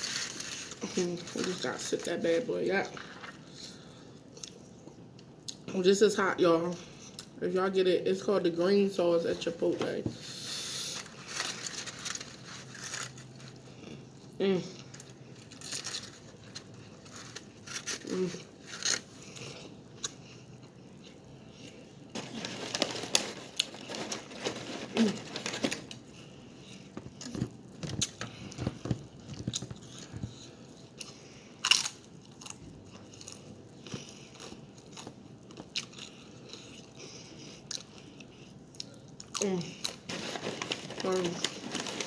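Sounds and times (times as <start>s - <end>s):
wrapper crinkling: 10.9s - 13.7s, 15.0s - 19.1s, 22.1s - 26.0s, 39.9s - 42.0s.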